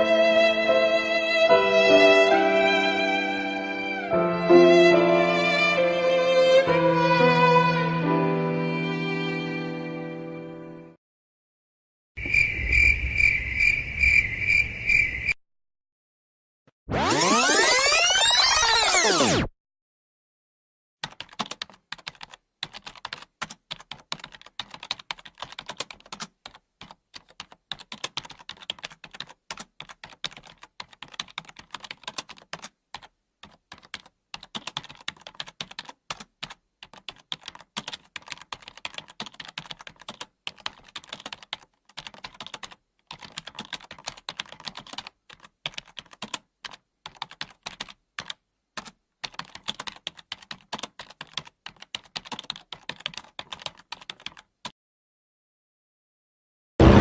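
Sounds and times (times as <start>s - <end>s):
computer keyboard typing: 21.0s - 54.7s.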